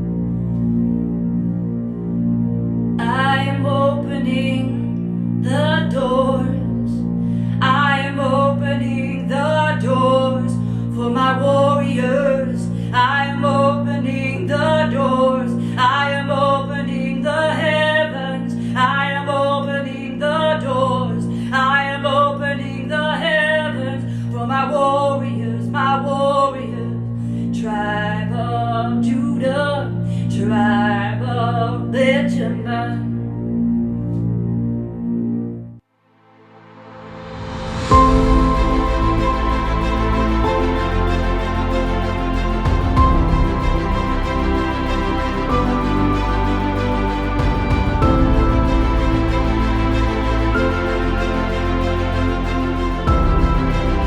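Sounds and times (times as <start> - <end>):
low keyboard drone: 0.0 - 23.0, 36.4 - 54.0.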